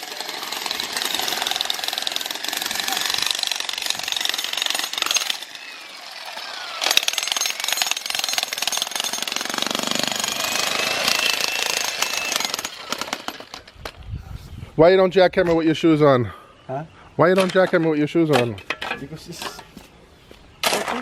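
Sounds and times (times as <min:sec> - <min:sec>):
jackhammer pounding concrete: 0:00.0 - 0:13.7.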